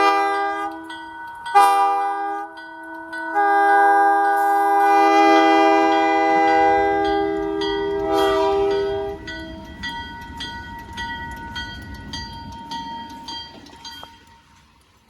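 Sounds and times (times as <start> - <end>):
locomotive air horn: 0.0 - 9.7
crossing bell dinging: 0.0 - 14.8
train rumbling: 0.0 - 15.0.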